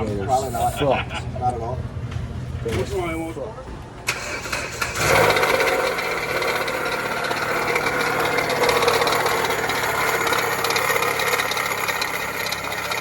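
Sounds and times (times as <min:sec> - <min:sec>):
car engine idling: 0:04.0 - 0:13.0
harsh alternator rattling: 0:04.0 - 0:13.0.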